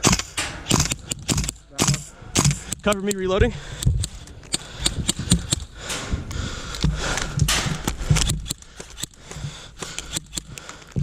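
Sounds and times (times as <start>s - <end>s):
low thumps: 0.0s - 8.6s
airsoft rifle clicks and knocks: 0.0s - 11.0s.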